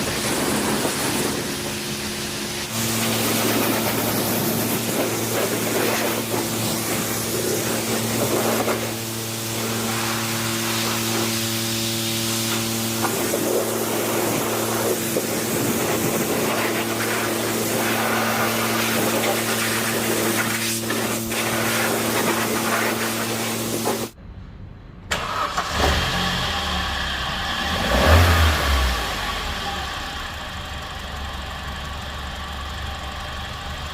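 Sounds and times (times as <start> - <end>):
hissing water spray: 0.0 - 24.2
pressure washer motor hum: 0.0 - 24.2
car engine starting and idling: 0.0 - 33.9.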